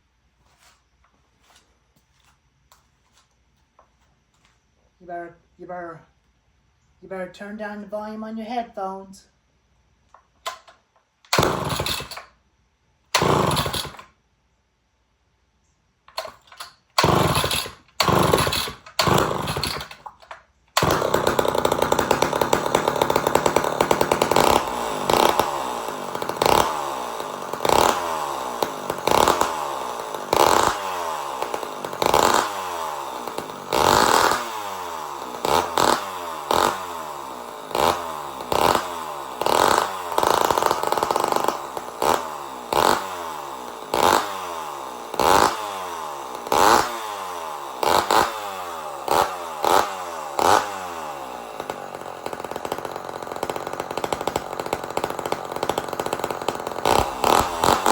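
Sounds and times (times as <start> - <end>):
chainsaw revving: 10.4 - 12.4, 13.1 - 14.2, 16.1 - 57.9.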